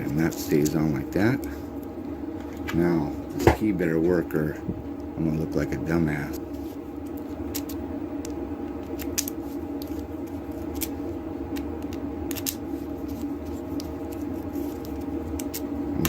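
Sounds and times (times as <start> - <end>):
steady hum: 0.0 - 16.0.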